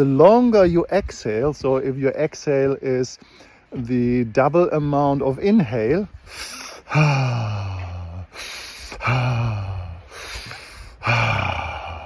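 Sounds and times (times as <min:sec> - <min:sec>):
quick inhale: 0:03.2 - 0:03.7, 0:06.2 - 0:06.9, 0:08.3 - 0:09.0, 0:10.1 - 0:11.0
man's voiced sighs: 0:06.2 - 0:12.0.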